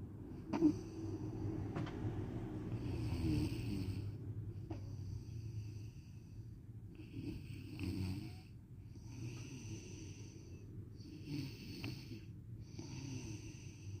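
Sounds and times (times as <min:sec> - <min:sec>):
person snoring: 0:00.5 - 0:01.7, 0:02.7 - 0:04.2, 0:07.0 - 0:14.0.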